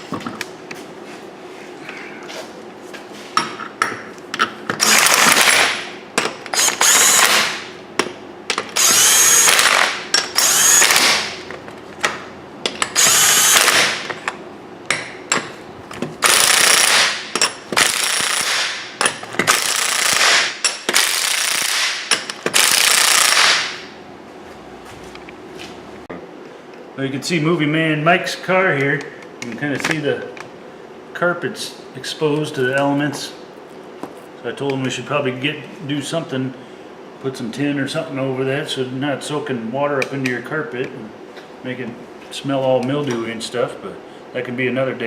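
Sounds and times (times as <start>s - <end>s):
impact wrench bursts: 4.7s - 7.8s, 8.5s - 11.5s, 12.1s - 14.3s, 16.2s - 23.9s.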